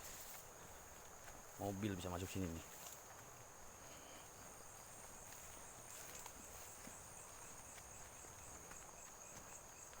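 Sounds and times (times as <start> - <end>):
insects chirring: 0.0 - 10.0
faint ticks: 5.0 - 10.0.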